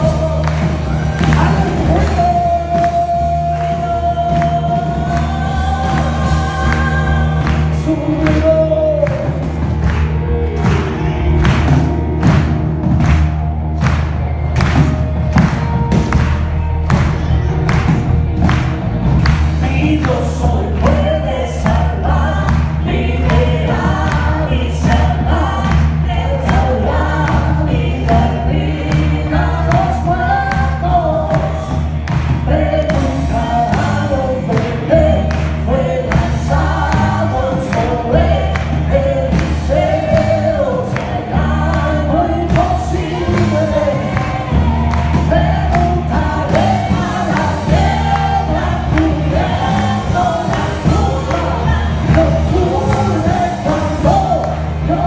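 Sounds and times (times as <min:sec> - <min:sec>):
choir singing over a beat: 0:00.0 - 0:14.0, 0:14.6 - 0:55.0.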